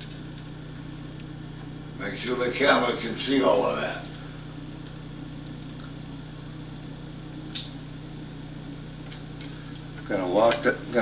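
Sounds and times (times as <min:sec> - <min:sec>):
low electrical hum: 0:00.0 - 0:11.0
sharp click: 0:07.5 - 0:07.8.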